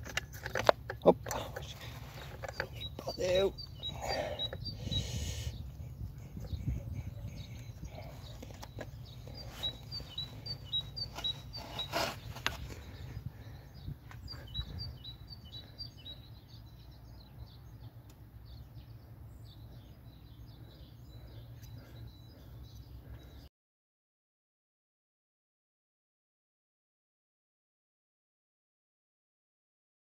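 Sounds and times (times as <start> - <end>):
low steady background rumble: 0.0 - 23.4
small bird chirping: 1.3 - 23.5.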